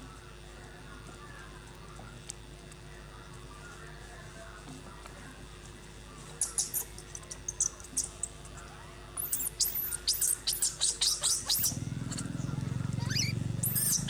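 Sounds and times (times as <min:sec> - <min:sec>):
baby monkey squealing: 0:06.4 - 0:08.4, 0:09.2 - 0:14.0.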